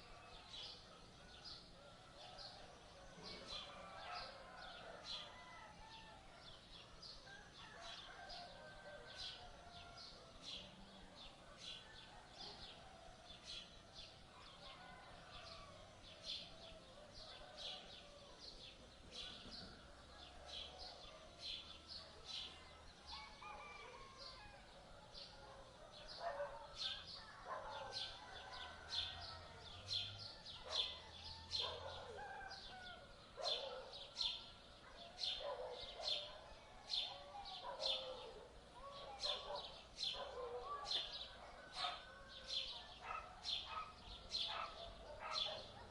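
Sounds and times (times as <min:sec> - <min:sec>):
small birds chirping: 0:29.8 - 0:36.4, 0:37.0 - 0:45.9.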